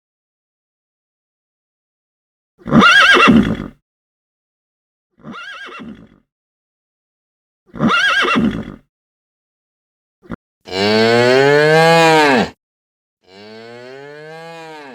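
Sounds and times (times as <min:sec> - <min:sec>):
horse whinnying: 0:02.6 - 0:03.8, 0:05.2 - 0:06.2, 0:07.7 - 0:08.8.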